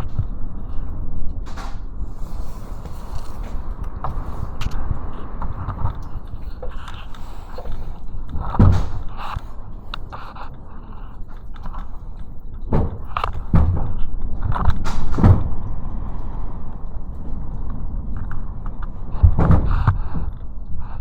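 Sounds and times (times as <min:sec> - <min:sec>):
strong wind rumbling: 0:00.0 - 0:21.0
loud thumps and knocks: 0:08.3 - 0:09.5, 0:12.7 - 0:15.5, 0:19.2 - 0:20.3.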